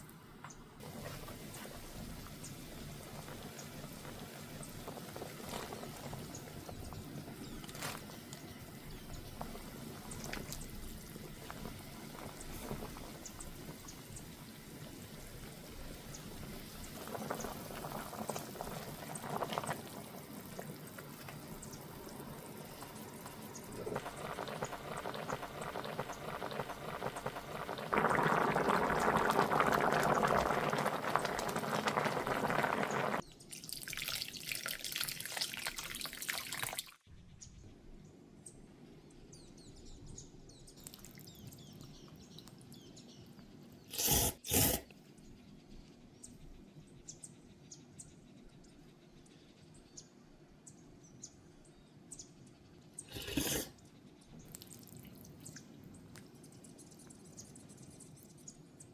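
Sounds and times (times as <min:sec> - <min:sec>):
kitchen water running: 0:09.2 - 0:37.0, 0:43.9 - 0:44.8, 0:53.1 - 0:53.7.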